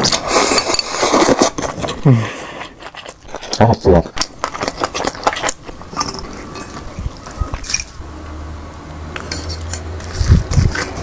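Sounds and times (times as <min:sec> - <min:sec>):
wet chewing: 0:00.0 - 0:08.2, 0:09.1 - 0:11.0.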